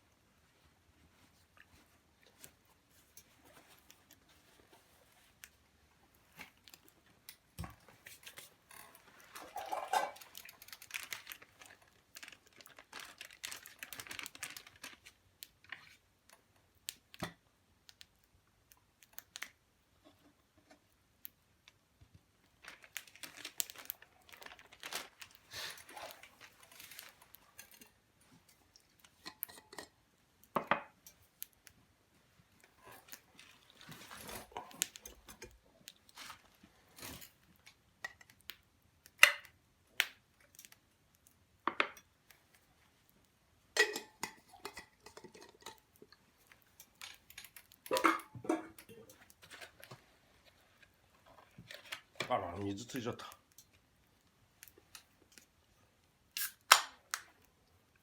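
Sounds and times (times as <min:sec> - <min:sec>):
crinkly rustling: 0:00.2 - 0:16.5, 0:21.6 - 0:29.9, 0:32.1 - 0:38.5, 0:44.0 - 0:55.8
cooking gear clicks and taps: 0:05.3 - 0:12.5, 0:13.4 - 0:22.3, 0:24.9 - 0:31.8, 0:32.5 - 0:53.9.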